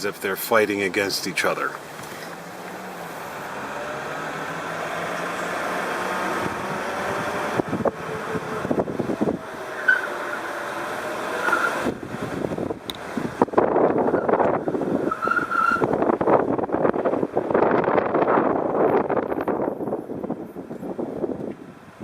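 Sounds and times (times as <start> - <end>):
car tires squealing on pavement: 3.5 - 12.0, 13.9 - 16.2.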